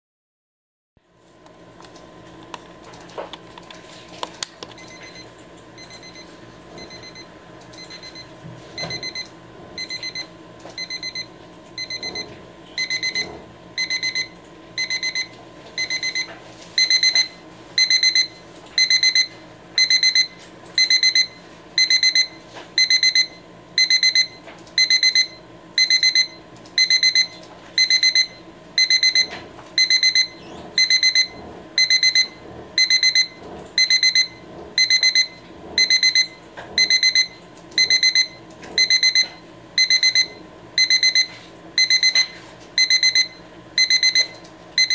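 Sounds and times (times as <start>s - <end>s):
alarm clock rapid high beeps: 4.8s - 5.2s, 5.8s - 7.2s, 7.8s - 8.2s, 8.8s - 12.2s, 12.8s - 13.2s, 13.8s - 44.9s.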